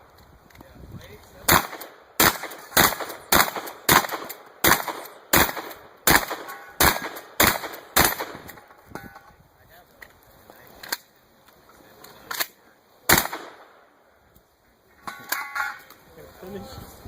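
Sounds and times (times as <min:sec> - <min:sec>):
shotgun shots: 0:01.4 - 0:08.7, 0:13.1 - 0:13.8.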